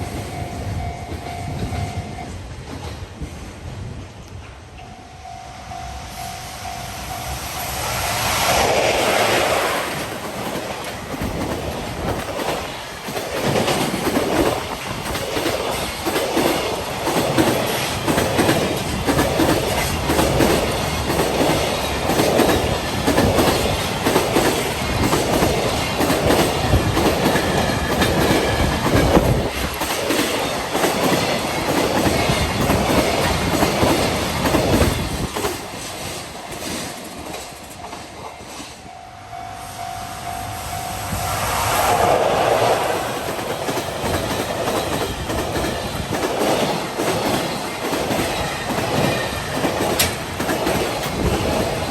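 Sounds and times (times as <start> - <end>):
freight train passing: 0.0 - 51.9
wheels clattering over rail joints: 43.1 - 51.9.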